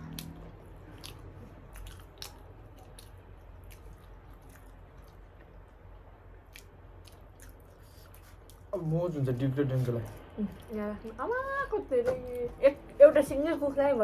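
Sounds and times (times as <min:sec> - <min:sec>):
wet chewing and mouth clicks: 0:00.0 - 0:11.2
faint low hum: 0:00.0 - 0:14.0.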